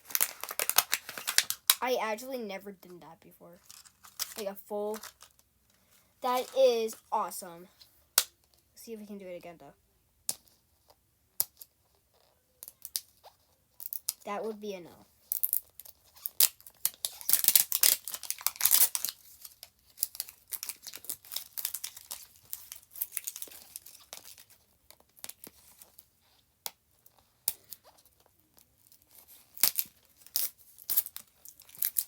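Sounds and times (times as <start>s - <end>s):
packaging crinkling and tearing: 0.0s - 1.8s, 3.6s - 7.2s, 15.3s - 26.1s, 27.0s - 32.0s.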